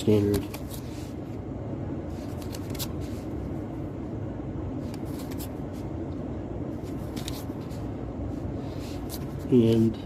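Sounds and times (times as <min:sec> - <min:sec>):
low background hum: 0:00.0 - 0:10.0
cards and paper rustling: 0:00.1 - 0:01.2, 0:02.1 - 0:03.4, 0:04.8 - 0:05.6, 0:06.8 - 0:07.9, 0:08.7 - 0:09.8.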